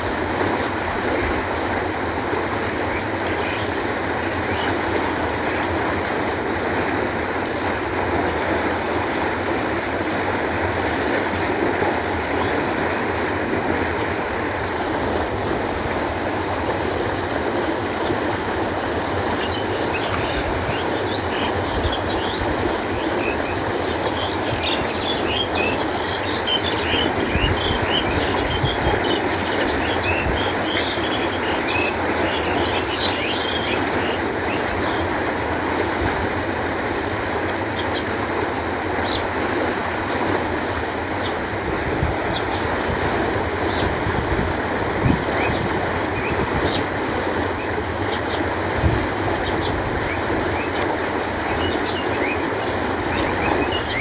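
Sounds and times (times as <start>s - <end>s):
flowing water rushing: 0.0s - 54.0s
small birds chirping: 18.0s - 35.1s, 49.3s - 54.0s.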